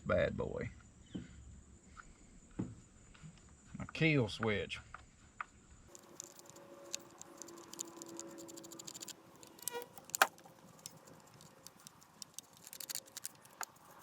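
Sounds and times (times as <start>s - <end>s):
faint steady hum: 0.0s - 14.0s
screwdriver metallic clicks and taps: 6.0s - 13.8s.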